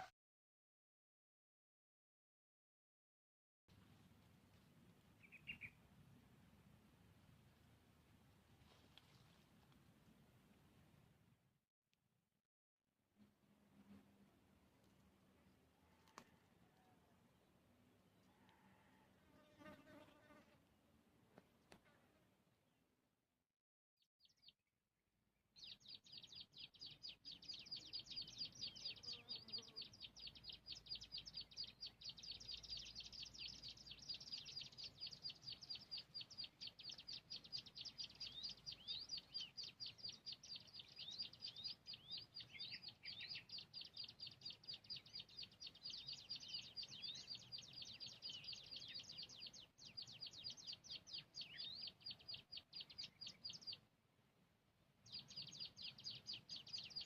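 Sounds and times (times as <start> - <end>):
songbird high chirping: 5.2 - 5.8, 25.6 - 53.9, 55.0 - 57.0.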